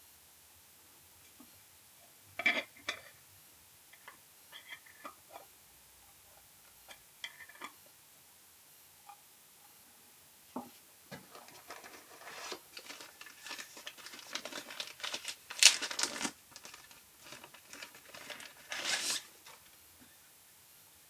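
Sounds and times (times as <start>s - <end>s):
packaging crinkling and rustling: 11.1s - 19.8s.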